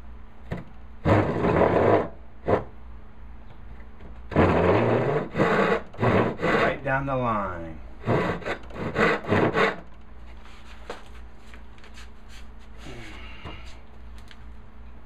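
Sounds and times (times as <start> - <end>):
hand saw cutting wood: 1.0 - 2.7, 4.3 - 7.0, 8.0 - 9.9
faint handling sounds: 10.2 - 14.5.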